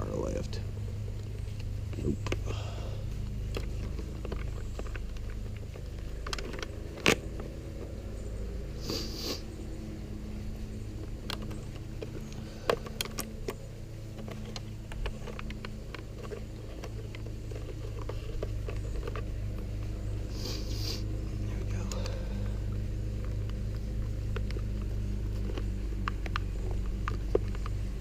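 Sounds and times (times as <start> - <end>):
steady low hum: 0.0 - 28.0
small ticks and taps: 23.1 - 28.0.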